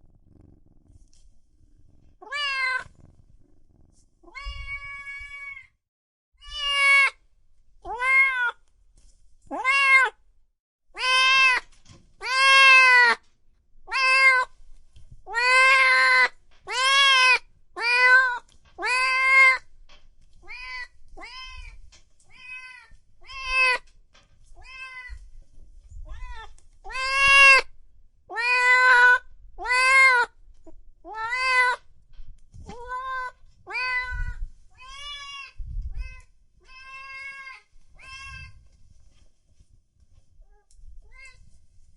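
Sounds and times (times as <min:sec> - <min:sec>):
cat meowing: 0:02.2 - 0:02.9, 0:04.2 - 0:05.7, 0:06.4 - 0:07.2, 0:07.9 - 0:08.6, 0:09.5 - 0:10.2, 0:11.0 - 0:13.2, 0:13.9 - 0:14.5, 0:15.3 - 0:19.6, 0:20.4 - 0:23.8, 0:24.6 - 0:25.2, 0:26.1 - 0:27.7, 0:28.3 - 0:30.3, 0:31.1 - 0:31.8, 0:32.7 - 0:38.6.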